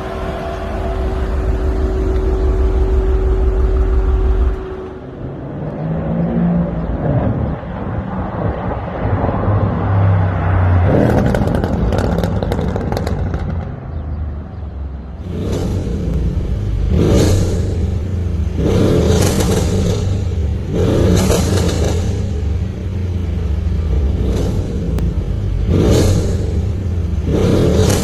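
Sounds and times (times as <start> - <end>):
car engine running: 0.0 - 5.8
engine revving: 0.0 - 7.4, 15.2 - 28.0.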